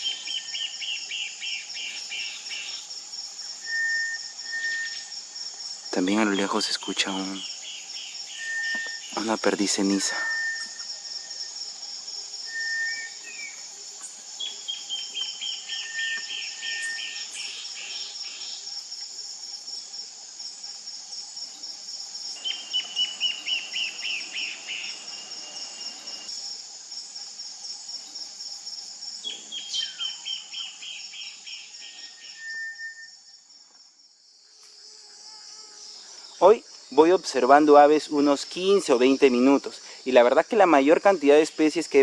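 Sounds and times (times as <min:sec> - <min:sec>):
high insect drone: 0:00.0 - 0:42.0
faint distant bird whistles: 0:03.6 - 0:05.1, 0:08.0 - 0:09.2, 0:10.0 - 0:11.2, 0:12.4 - 0:13.6, 0:29.6 - 0:33.3.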